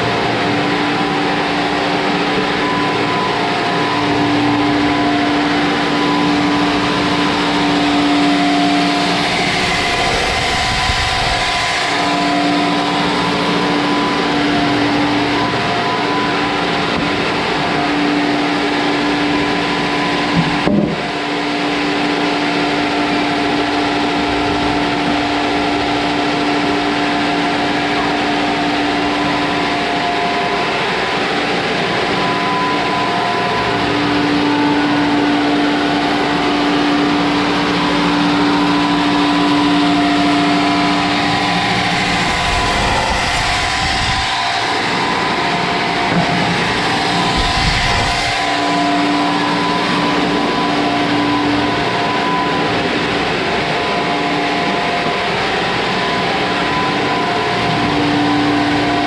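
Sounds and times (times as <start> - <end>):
constant motor hum: 0.0 - 59.0
sawmill machinery running: 0.0 - 59.0
short knock: 20.4 - 21.1.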